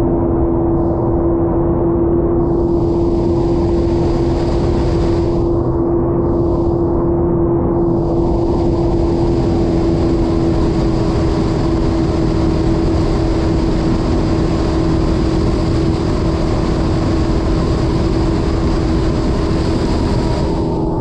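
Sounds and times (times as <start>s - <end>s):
jet ski engine running: 2.4s - 5.6s, 7.8s - 21.0s
rush of wind and water: 2.4s - 7.1s, 7.7s - 21.0s.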